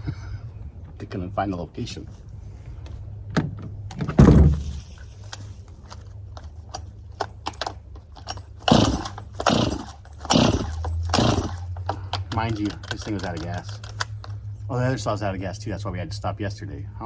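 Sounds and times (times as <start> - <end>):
equipment clicks and knocks: 3.3 - 4.6
heavy thump: 3.3 - 4.9.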